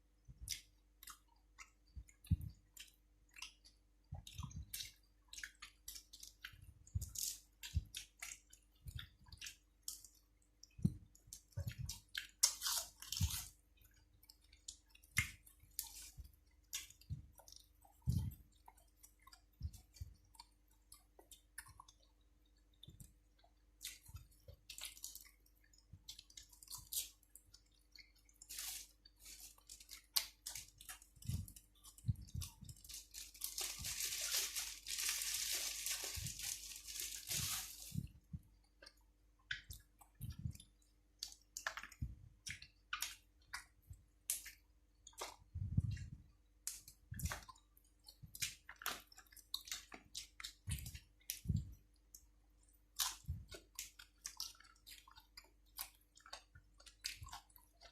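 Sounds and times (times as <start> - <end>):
person chewing food: 0.1 - 57.9
crunching raw vegetables: 0.3 - 57.9.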